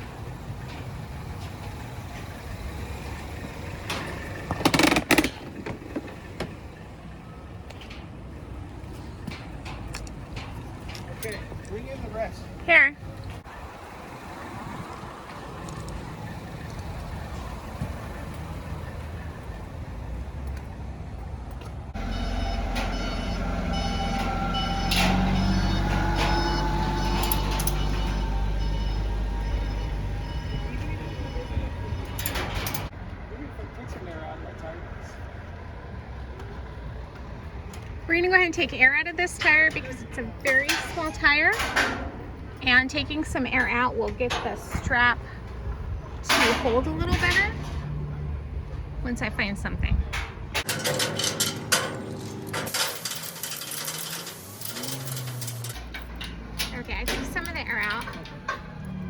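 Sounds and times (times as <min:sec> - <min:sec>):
truck engine idling: 0:00.0 - 0:59.0
sharp clicks and knocks: 0:03.9 - 0:06.6, 0:50.1 - 0:59.0.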